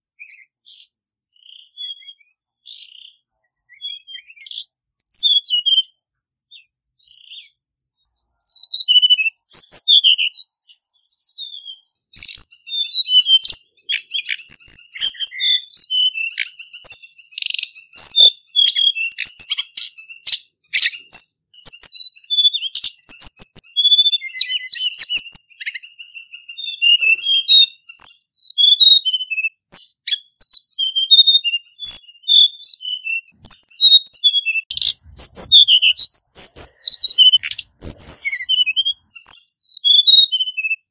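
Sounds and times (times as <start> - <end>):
bird singing high sliding notes: 34.7 - 39.1.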